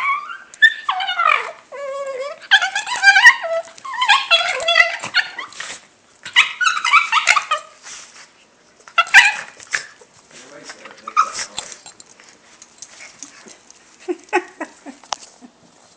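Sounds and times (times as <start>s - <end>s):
dog making gliding vocal calls: 11.0s - 11.9s.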